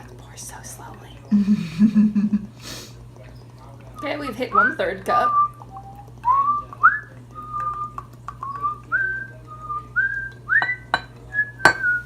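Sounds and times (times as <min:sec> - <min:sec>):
person whistling a tune: 0:04.5 - 0:12.0.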